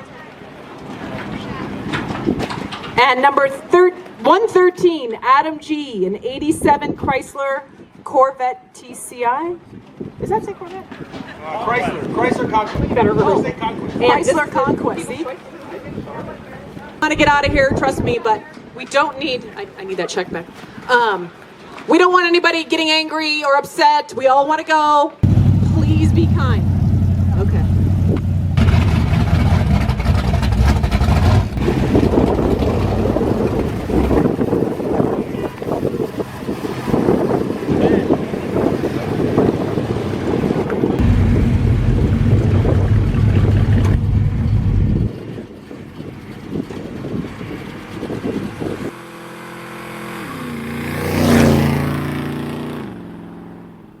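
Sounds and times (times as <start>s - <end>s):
car exhaust rumble: 25.2s - 49.0s
car driving past: 48.5s - 53.9s.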